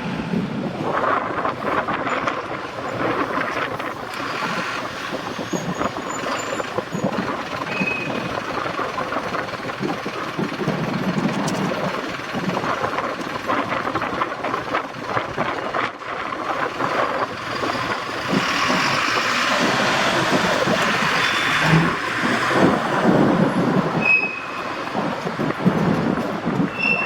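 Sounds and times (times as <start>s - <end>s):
train rumbling on rails: 0.0s - 27.0s
high wheel squeals: 4.2s - 8.7s, 17.3s - 22.9s, 23.9s - 25.0s, 26.5s - 27.0s.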